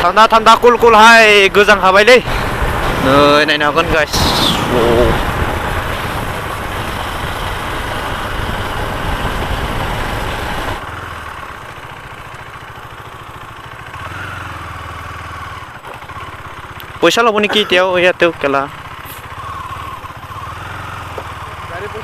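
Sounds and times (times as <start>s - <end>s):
motorcycle engine idling: 0.1s - 22.0s.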